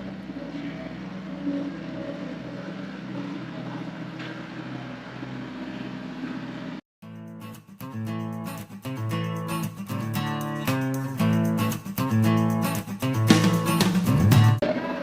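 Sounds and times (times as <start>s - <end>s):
acoustic guitar music: 7.0s - 15.0s.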